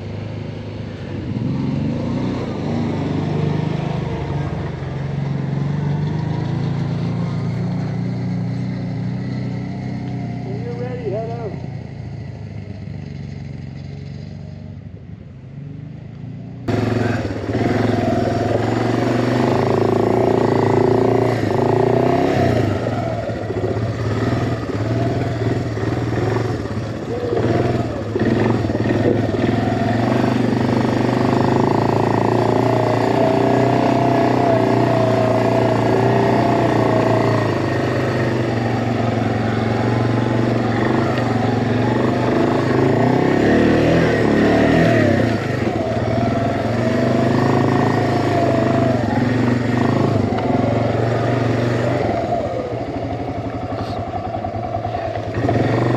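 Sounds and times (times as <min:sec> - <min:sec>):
atv engine revving: 0:00.0 - 0:14.8, 0:15.6 - 0:55.9.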